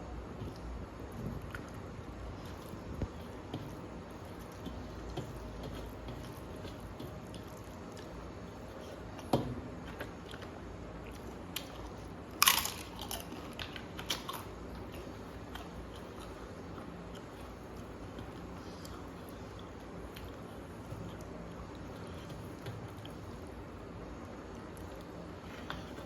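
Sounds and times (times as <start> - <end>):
chewing with mouth clicks: 0.4 - 23.6, 24.6 - 26.0
crisp crunch of biting: 12.4 - 14.5.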